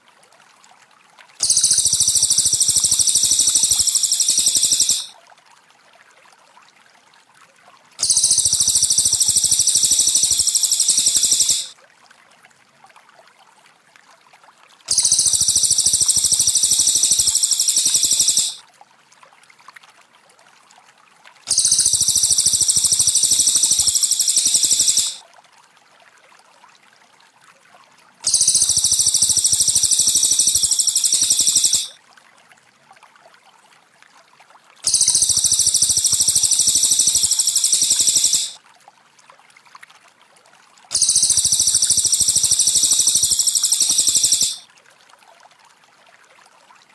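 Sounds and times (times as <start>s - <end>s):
faint trickle of water: 0.0s - 43.6s, 44.6s - 46.9s
bird song high dense trill: 1.4s - 5.1s, 8.0s - 11.7s, 14.9s - 18.6s, 21.5s - 25.2s, 28.3s - 32.0s, 34.9s - 38.6s, 40.9s - 44.6s.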